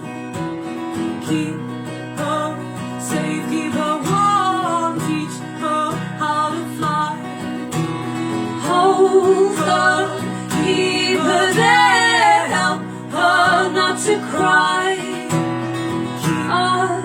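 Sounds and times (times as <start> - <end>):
strummed acoustic guitar: 0.0 - 17.0
person singing: 8.4 - 15.5, 16.2 - 17.0.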